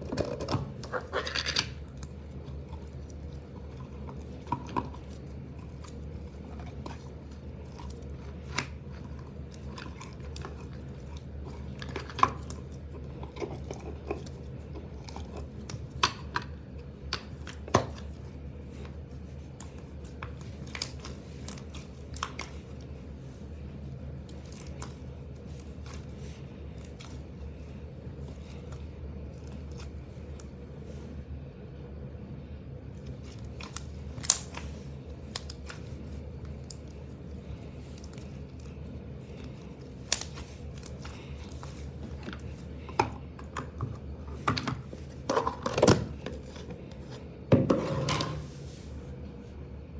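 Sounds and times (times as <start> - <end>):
steady low hum: 0.0 - 49.9
slime squishing and popping: 33.1 - 43.8.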